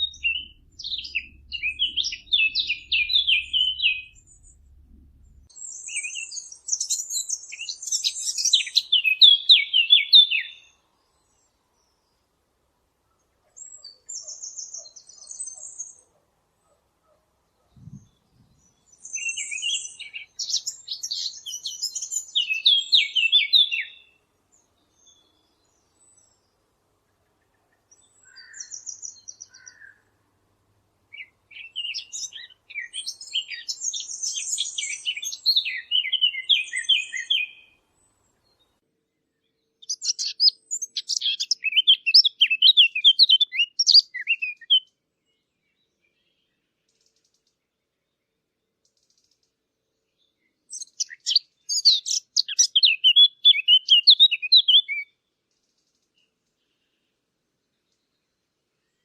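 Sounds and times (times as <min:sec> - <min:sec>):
warbler singing: 0:00.0 - 0:12.2, 0:17.7 - 0:26.6, 0:27.9 - 0:30.0, 0:31.1 - 0:38.7, 0:39.4 - 0:48.1, 0:50.1 - 0:57.1.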